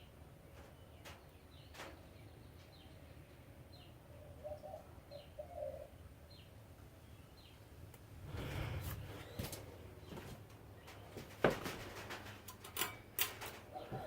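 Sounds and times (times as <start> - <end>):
ceiling fan hum: 0.0 - 14.0
low coo: 4.2 - 6.0.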